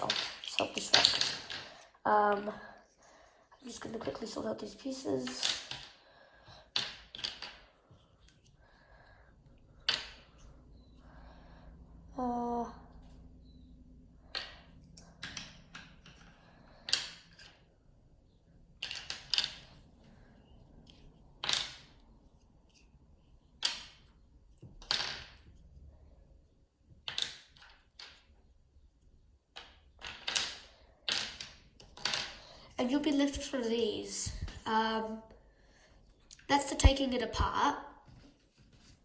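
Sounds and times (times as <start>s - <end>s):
plastic cube pieces clacking: 0.0s - 2.5s, 6.7s - 8.4s, 14.3s - 17.7s, 18.8s - 19.9s, 20.9s - 22.0s, 27.0s - 28.4s, 29.5s - 32.4s.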